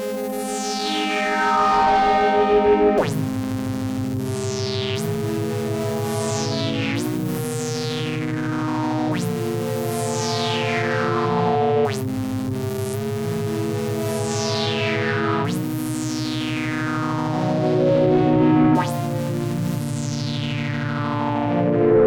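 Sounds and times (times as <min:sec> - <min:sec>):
synthesizer chords: 0:00.0 - 0:04.0, 0:16.2 - 0:22.0.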